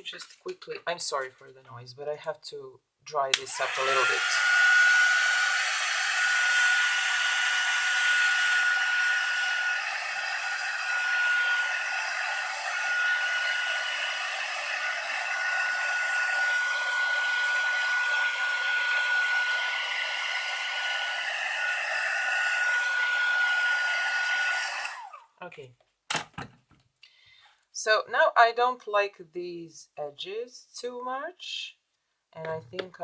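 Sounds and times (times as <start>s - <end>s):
hot-air blower whining: 3.3s - 25.2s.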